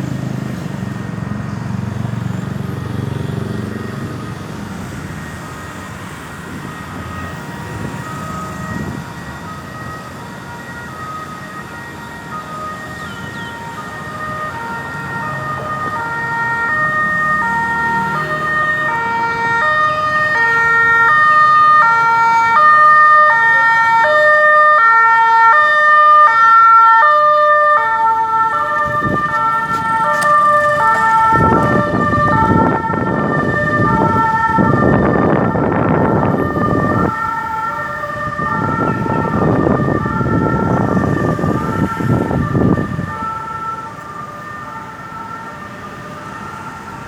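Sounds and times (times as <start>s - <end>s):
vehicle passing by: 0.0s - 5.3s, 13.8s - 45.7s
ambulance siren wailing: 0.0s - 47.0s.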